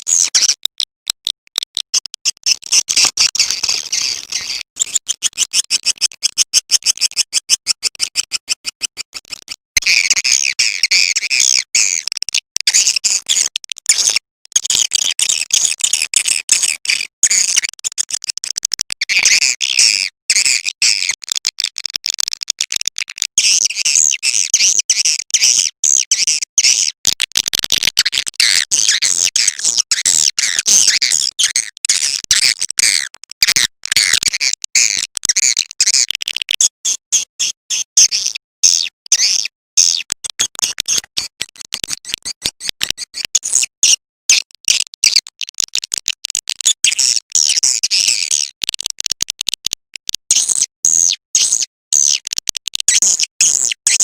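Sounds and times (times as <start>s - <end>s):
swiftlets chirping and twittering: 40.6s - 44.0s.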